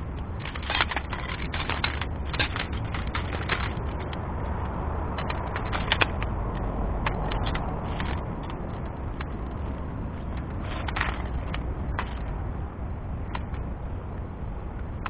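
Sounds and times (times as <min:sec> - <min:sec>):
gusting wind buffeting microphone: 0:00.0 - 0:15.0.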